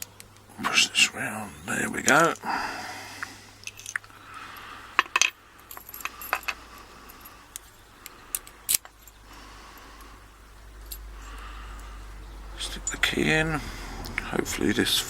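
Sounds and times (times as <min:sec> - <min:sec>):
metal padlock parts clicking: 0:03.6 - 0:04.2, 0:05.0 - 0:09.2.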